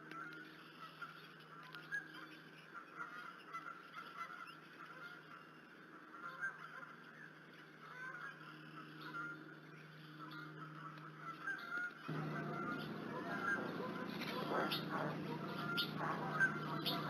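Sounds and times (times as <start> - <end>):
steady low hum: 0.0 - 17.0
faint short calls: 10.2 - 17.0.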